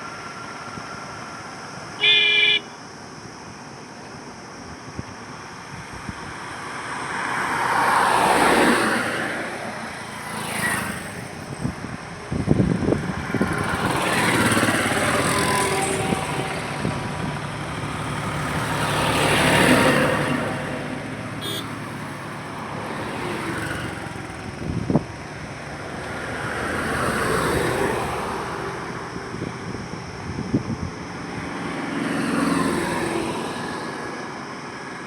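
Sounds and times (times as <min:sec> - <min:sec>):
vehicles passing on highway: 0:00.0 - 0:35.0
heavy vehicle engine rumble: 0:11.1 - 0:26.8.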